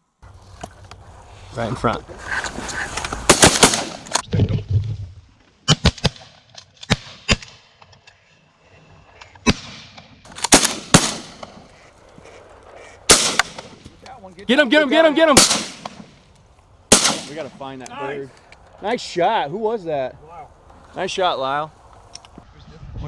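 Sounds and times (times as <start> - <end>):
shotguns firing: 3.3 - 4.2, 9.4 - 11.7, 13.0 - 14.0, 15.3 - 16.2, 16.9 - 17.7.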